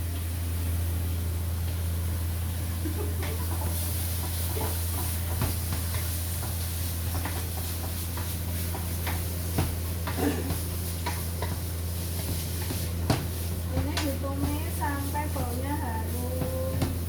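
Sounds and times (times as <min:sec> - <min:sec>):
spatula scraping a wok: 0:03.6 - 0:17.0.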